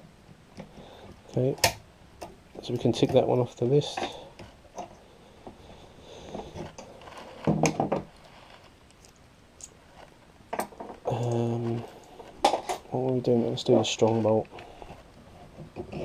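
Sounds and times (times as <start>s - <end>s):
person speaking: 2.6s - 4.4s, 11.0s - 12.2s, 12.8s - 14.8s.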